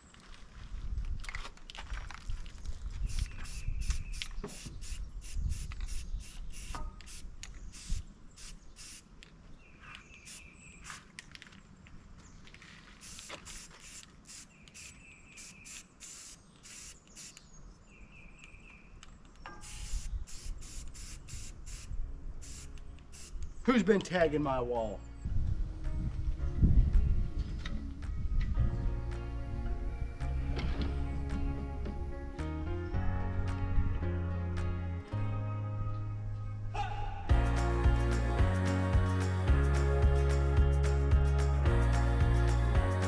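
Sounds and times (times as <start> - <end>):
spray-paint can hissing: 3.1 - 9.1, 10.2 - 11.0, 13.0 - 17.4, 19.6 - 23.4.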